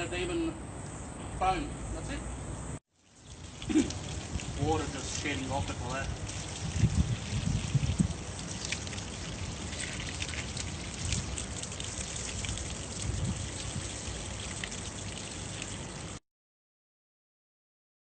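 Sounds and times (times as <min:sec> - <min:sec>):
water dripping off a car: 0:03.0 - 0:16.2.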